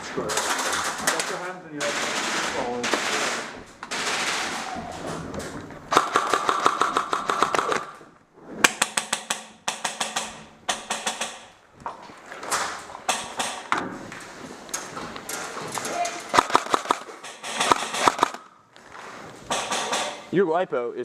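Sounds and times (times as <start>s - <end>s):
airsoft rifle full-auto bursts: 5.9s - 7.9s, 16.3s - 18.4s.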